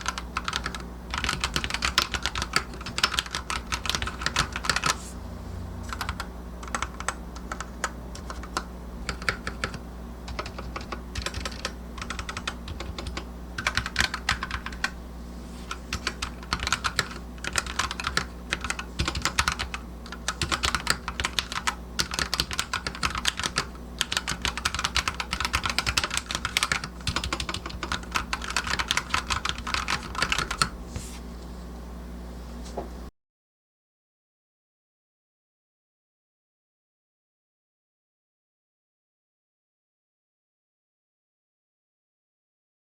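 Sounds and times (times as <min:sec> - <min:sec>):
mechanical keyboard typing: 0:00.0 - 0:05.0, 0:05.9 - 0:14.9, 0:15.9 - 0:30.7.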